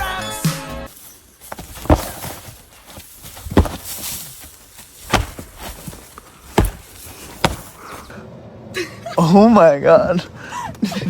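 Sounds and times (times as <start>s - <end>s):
heavy dull thumps: 1.5s - 8.1s.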